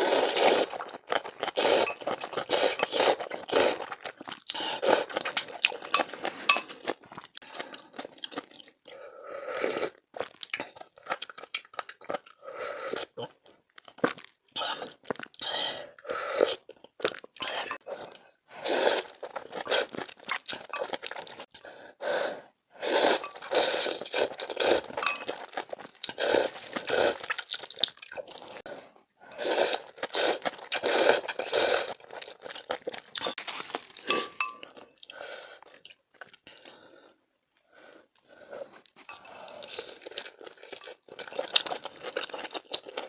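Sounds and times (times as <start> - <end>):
crunchy chewing: 38.7 - 43.0.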